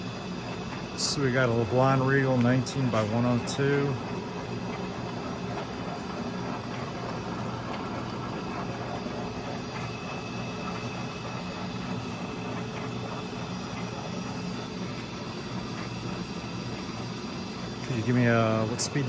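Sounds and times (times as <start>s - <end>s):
lathe mechanical whir: 0.0s - 19.0s.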